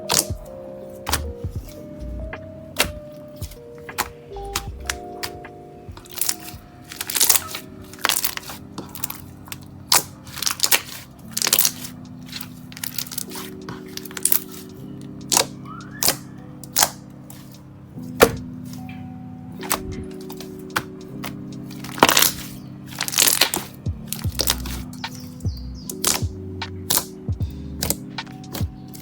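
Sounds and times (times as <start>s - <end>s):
soft background music: 0.0s - 29.0s.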